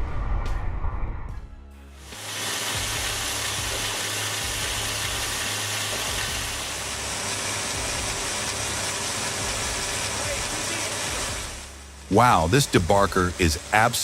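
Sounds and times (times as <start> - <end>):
debarking machine hissing: 2.0 - 14.0
low engine hum: 4.5 - 13.9.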